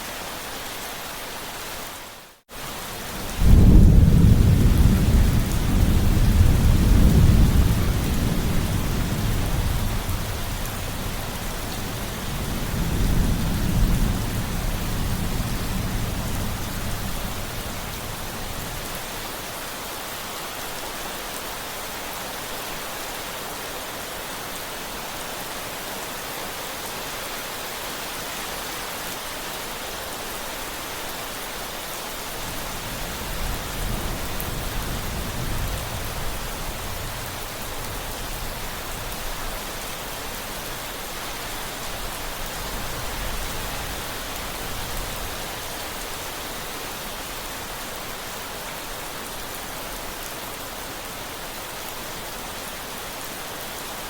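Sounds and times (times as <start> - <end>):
steady rain falling: 0.0 - 54.0
rolling thunder rumble: 3.2 - 17.7.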